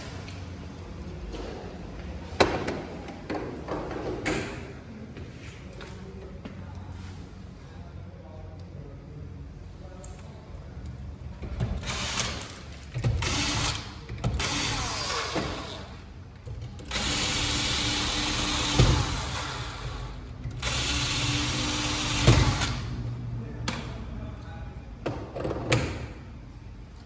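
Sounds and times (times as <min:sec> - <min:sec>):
power tool grinding: 0:16.8 - 0:20.0.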